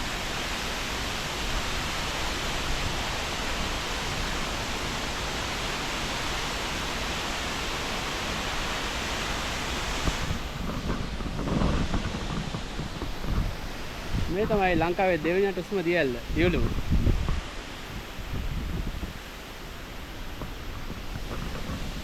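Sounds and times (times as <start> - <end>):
waterfall rushing into pool: 0.0 - 22.0
wind buffeting microphone: 9.3 - 22.0.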